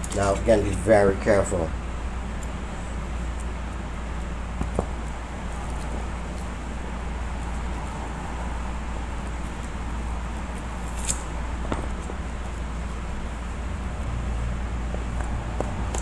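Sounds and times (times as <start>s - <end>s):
low background hum: 0.0s - 16.0s.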